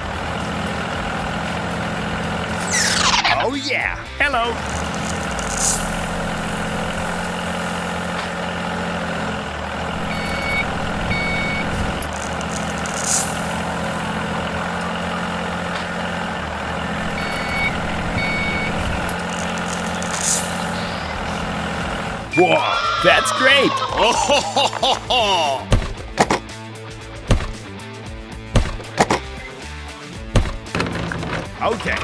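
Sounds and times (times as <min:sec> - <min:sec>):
heavy vehicle engine running: 0:00.0 - 0:23.2, 0:23.8 - 0:32.0
air hiss: 0:04.7 - 0:08.5, 0:11.6 - 0:14.2
short reversing beeps: 0:09.9 - 0:15.2, 0:17.0 - 0:23.6.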